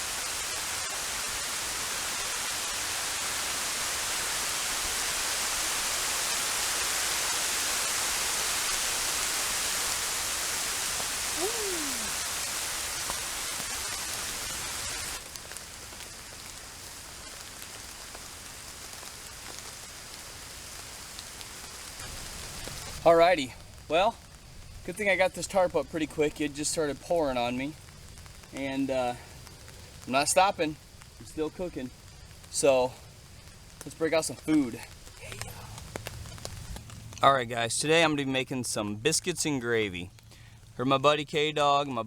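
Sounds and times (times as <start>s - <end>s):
heavy rain pouring: 0.0s - 27.8s, 28.5s - 37.2s.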